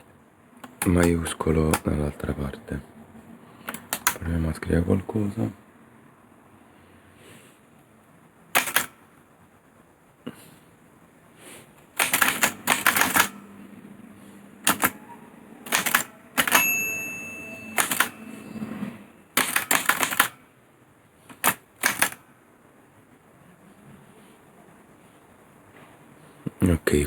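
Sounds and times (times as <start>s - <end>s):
typewriter keys clacking: 8.6s - 8.9s, 12.0s - 13.4s, 14.7s - 15.0s, 15.7s - 16.7s, 17.6s - 18.2s, 19.4s - 20.4s, 21.3s - 22.2s
typewriter bell ringing: 15.7s - 20.3s.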